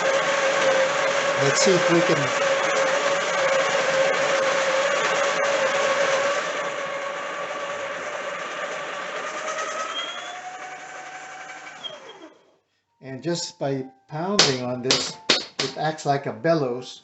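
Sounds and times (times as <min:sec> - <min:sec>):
coffee grinder whining: 0:00.0 - 0:12.5.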